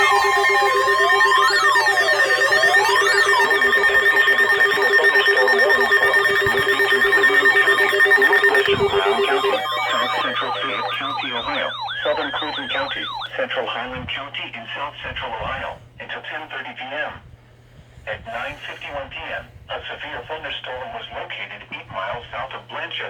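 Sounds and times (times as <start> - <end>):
fast repeating warble: 0.0 - 13.3
emergency alert tones: 0.0 - 13.4.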